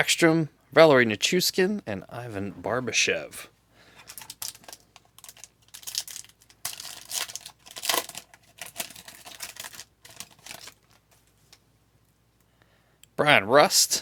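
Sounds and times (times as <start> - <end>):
foil wrapper crinkling and tearing: 3.9 - 11.6.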